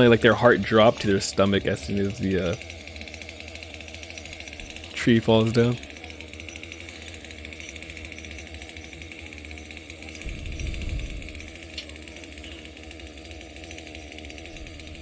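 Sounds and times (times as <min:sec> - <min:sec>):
chainsaw engine running: 0:00.0 - 0:15.0.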